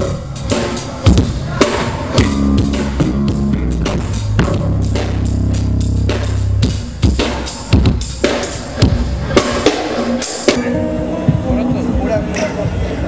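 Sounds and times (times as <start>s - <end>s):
drum kit playing: 0.0s - 12.8s
held low notes: 2.1s - 8.1s.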